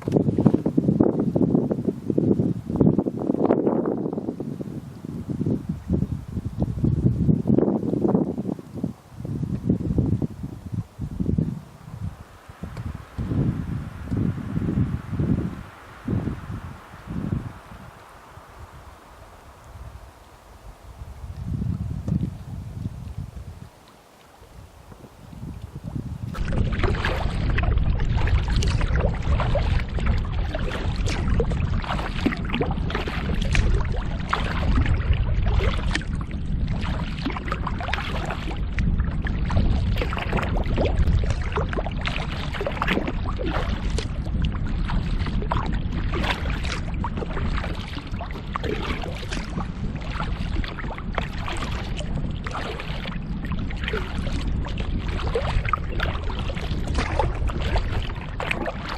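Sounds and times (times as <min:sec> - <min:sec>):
water splashing around kayak: 0:00.0 - 0:58.9
wind rumble on microphone: 0:00.0 - 0:58.9.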